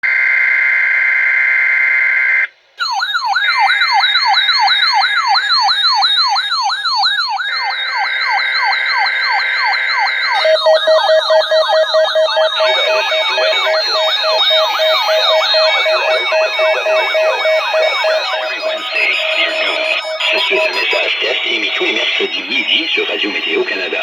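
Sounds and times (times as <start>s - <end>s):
rapid low beeping: 2.8s - 24.0s
siren tone sweeping downward: 2.8s - 24.0s
steady high tone: 2.8s - 24.0s
two-tone alert screech: 6.0s - 24.0s.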